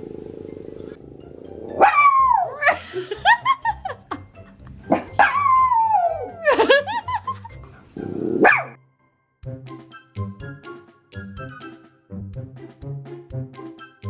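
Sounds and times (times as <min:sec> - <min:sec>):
dog barking and yelping: 0:01.7 - 0:02.8, 0:05.0 - 0:06.4, 0:08.4 - 0:08.8.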